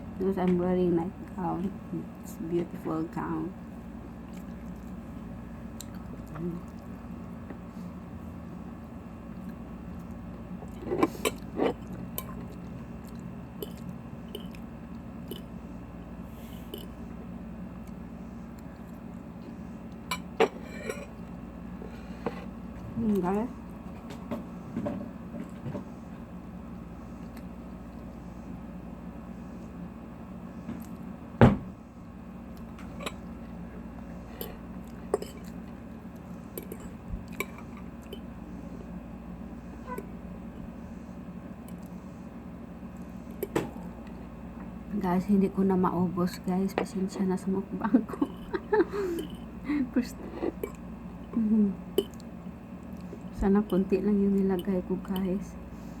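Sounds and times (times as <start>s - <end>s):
low steady hum: 0.0s - 56.0s
chewing crunchy salad: 4.1s - 7.8s, 9.2s - 15.6s, 32.5s - 38.3s.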